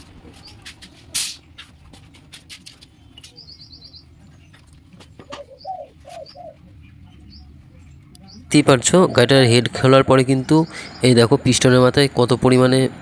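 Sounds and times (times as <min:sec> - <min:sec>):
bird chirp: 0:02.7 - 0:09.4, 0:10.2 - 0:11.8
bird cooing: 0:05.2 - 0:07.4.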